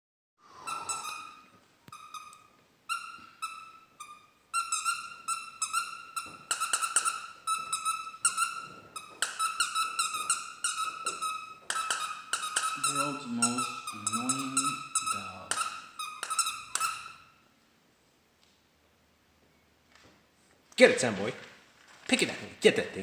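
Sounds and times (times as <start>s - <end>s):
squeaky toy squeaking: 0.6s - 17.4s.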